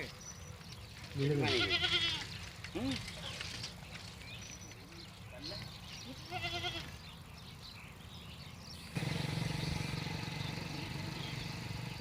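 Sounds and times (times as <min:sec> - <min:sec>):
animal bleat: 0:01.2 - 0:02.4, 0:06.0 - 0:07.0.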